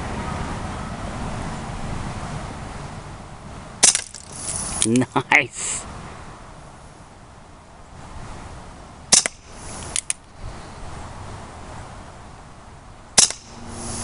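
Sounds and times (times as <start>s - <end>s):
bb revolver shots popping: 3.8s - 4.4s, 9.1s - 10.1s, 13.2s - 13.6s
quick clicks: 9.2s - 10.2s.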